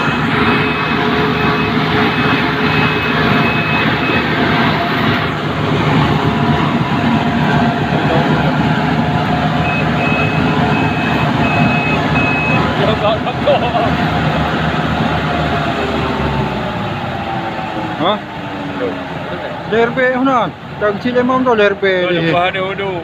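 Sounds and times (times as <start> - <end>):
warning beeper beeping: 0.0 - 4.6, 9.6 - 12.7
combine harvester running: 0.0 - 23.0.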